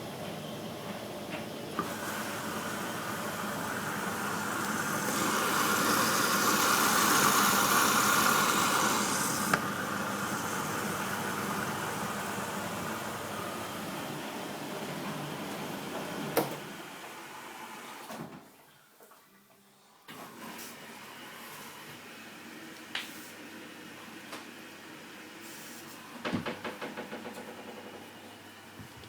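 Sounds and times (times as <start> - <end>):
tumble dryer running: 0.0 - 17.4
water rushing into washing machine: 1.6 - 19.2, 20.1 - 21.7.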